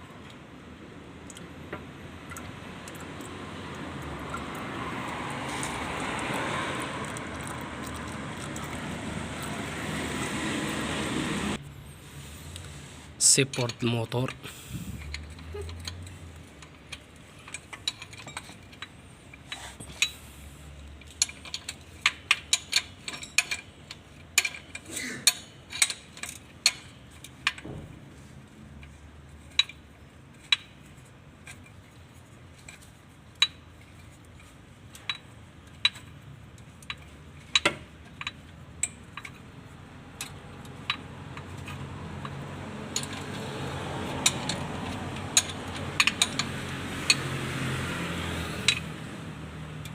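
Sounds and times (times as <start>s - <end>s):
metal tools clinking: 15.0s - 20.2s, 21.0s - 27.6s, 40.2s - 47.3s
ratchet clicks: 40.2s - 47.3s, 48.6s - 48.9s.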